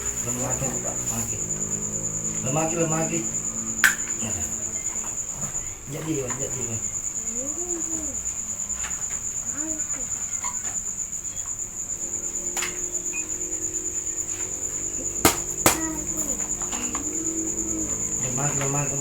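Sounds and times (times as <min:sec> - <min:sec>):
cricket trilling: 0:00.0 - 0:19.0.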